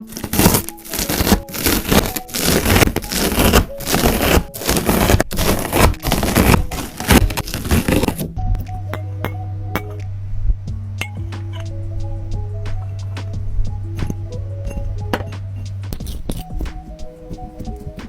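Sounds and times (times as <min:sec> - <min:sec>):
slime squishing and crackling: 0:00.0 - 0:08.4, 0:12.7 - 0:18.0.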